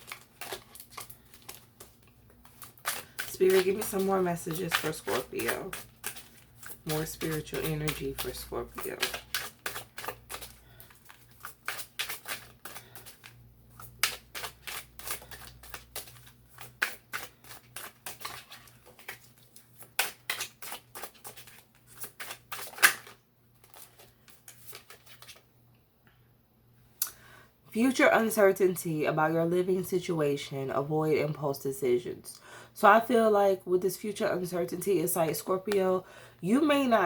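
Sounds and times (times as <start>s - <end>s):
cards being shuffled: 0.0s - 25.4s.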